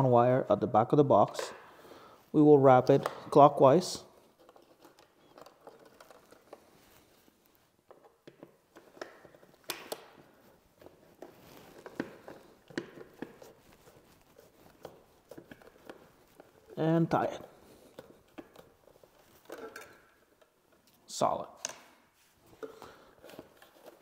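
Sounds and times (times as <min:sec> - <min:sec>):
wire scraping and clicking: 0:04.2 - 0:21.0.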